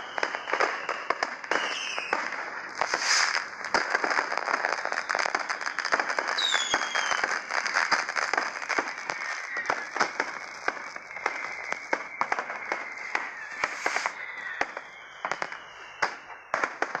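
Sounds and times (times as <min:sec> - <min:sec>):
crackling hiss: 0:00.0 - 0:17.0
fireworks cracking and popping: 0:00.0 - 0:17.0
high whistle falling in pitch: 0:00.0 - 0:17.0.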